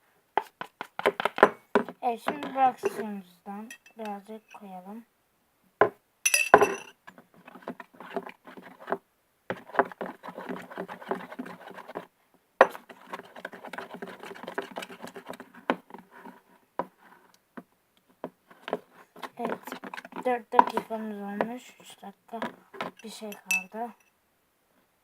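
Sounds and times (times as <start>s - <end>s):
slime stirred in a bowl: 0.4s - 4.6s, 7.3s - 12.1s, 12.7s - 17.3s, 18.5s - 21.1s, 22.3s - 23.7s.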